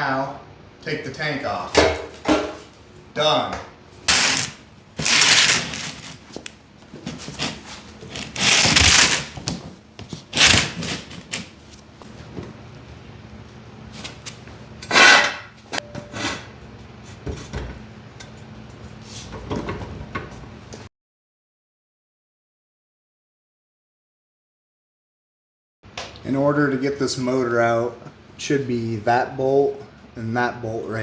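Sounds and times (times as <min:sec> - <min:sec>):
parts and tools scraping and clunking: 0:04.1 - 0:11.5, 0:14.0 - 0:16.5, 0:19.0 - 0:20.4.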